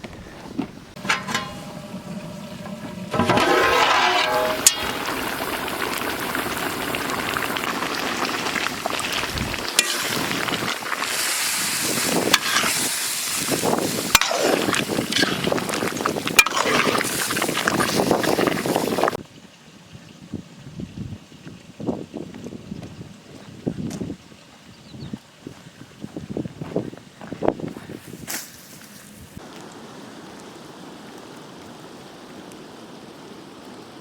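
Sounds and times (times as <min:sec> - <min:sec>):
sharp pops of frying: 0:01.0 - 0:19.1
food sizzling in a pan: 0:01.6 - 0:19.2.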